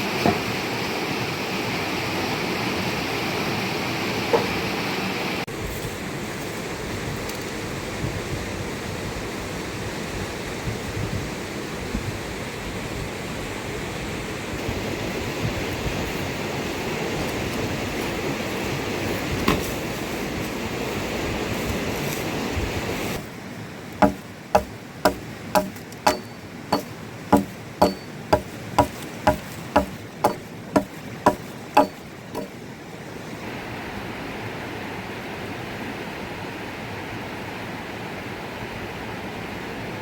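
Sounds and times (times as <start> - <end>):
hammer striking wood: 24.0 - 32.5
steady water noise: 24.0 - 32.6.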